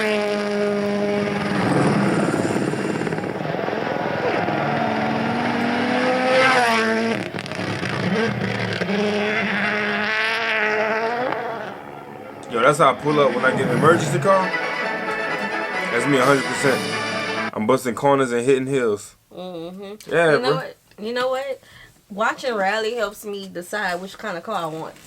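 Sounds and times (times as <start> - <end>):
rally car engine accelerating: 0.0 - 17.5.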